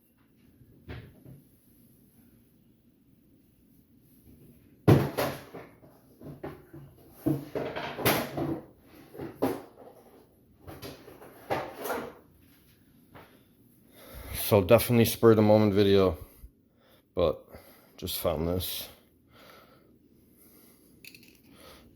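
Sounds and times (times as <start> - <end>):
tools clattering and knocking: 4.9 - 12.2, 21.0 - 21.5.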